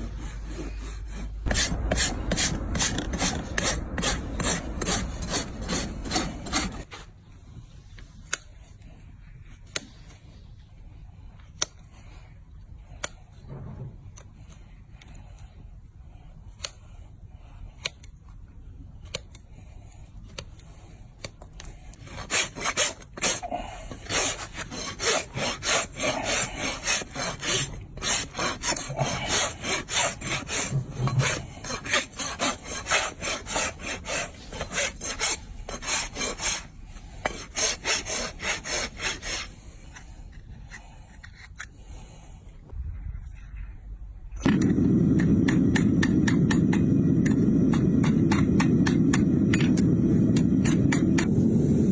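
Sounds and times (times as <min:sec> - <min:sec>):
rasp filing hoof: 0:22.0 - 0:39.6.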